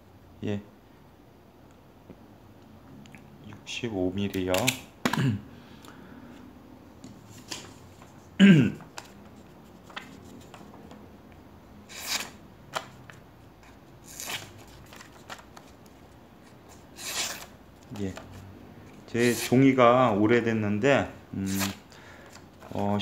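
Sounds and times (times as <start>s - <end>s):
paper rustling: 7.0s - 11.0s, 11.9s - 19.5s.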